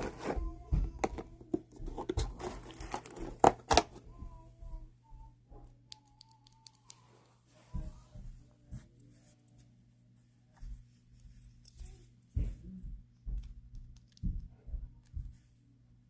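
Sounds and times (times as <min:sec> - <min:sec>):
crinkling: 0:00.0 - 0:04.0.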